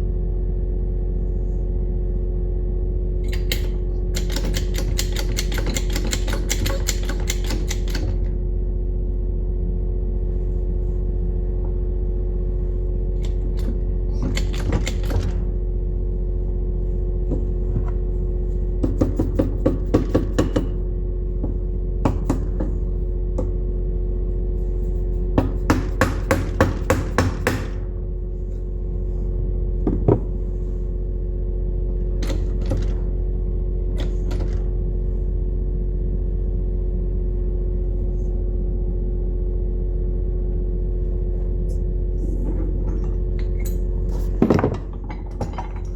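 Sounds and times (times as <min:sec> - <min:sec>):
steady machine hum: 0:00.0 - 0:45.9.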